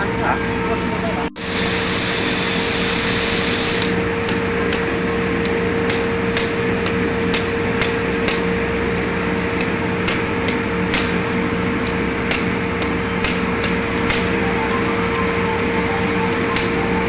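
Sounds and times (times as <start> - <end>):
machine hum: 0.0 - 17.0.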